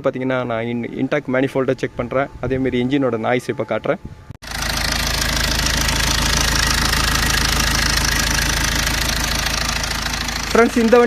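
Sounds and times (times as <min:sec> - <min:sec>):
diesel engine running: 0:04.1 - 0:11.0.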